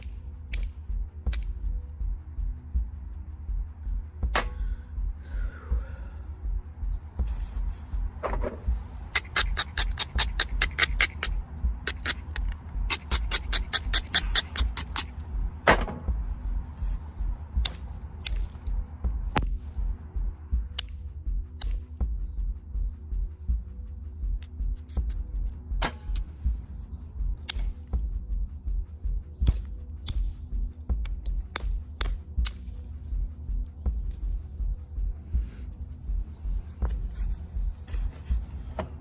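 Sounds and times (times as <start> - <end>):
fast ticking grinding strokes: 9.1 - 15.2.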